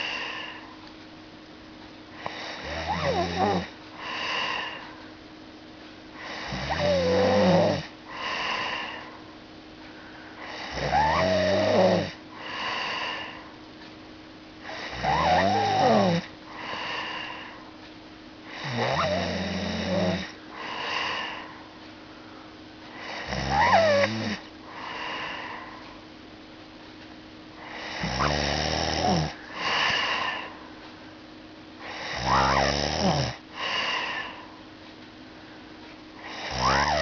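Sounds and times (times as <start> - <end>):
loud rough snoring: 2.2 - 4.8, 6.2 - 9.0, 10.5 - 13.3, 14.6 - 17.4, 18.5 - 21.4, 23.0 - 24.4, 27.6 - 30.4, 31.8 - 34.3, 36.2 - 37.0.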